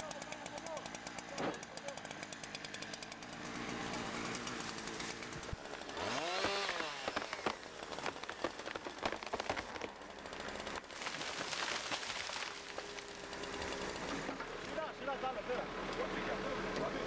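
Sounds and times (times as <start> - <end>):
burning vegetation crackling: 3.3 - 15.0.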